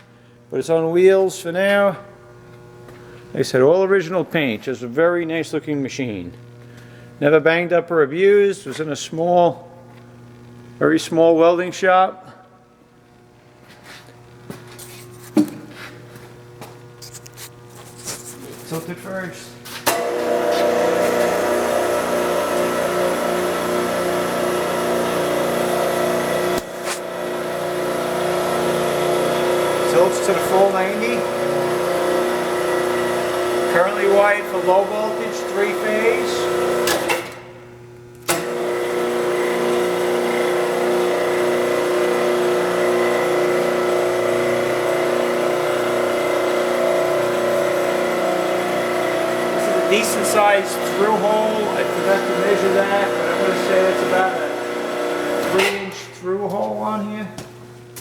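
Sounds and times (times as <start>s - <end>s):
motor drive running: 15.4s - 56.2s.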